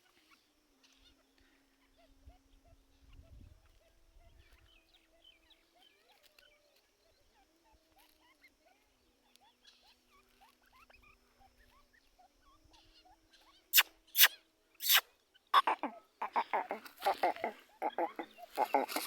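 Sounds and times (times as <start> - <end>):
bird chirping softly: 0.0 - 19.0
shrill bird calls: 9.6 - 19.0.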